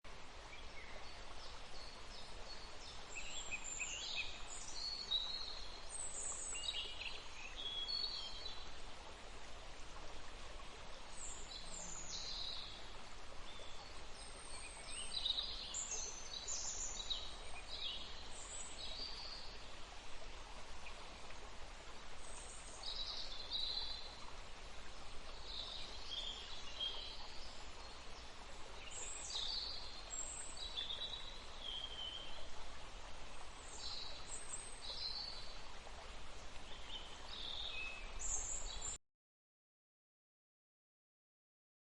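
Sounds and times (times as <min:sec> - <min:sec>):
outdoor background hiss: 0:00.1 - 0:39.0.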